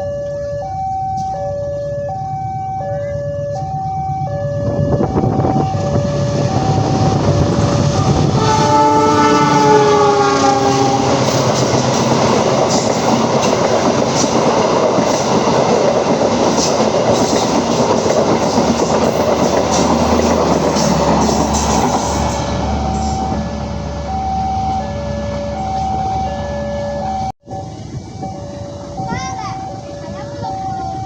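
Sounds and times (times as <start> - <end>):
two-tone warning signal beeping: 0.0 - 13.8, 22.5 - 31.0
train rumbling by: 0.2 - 31.0
locomotive horn chord: 7.8 - 12.2.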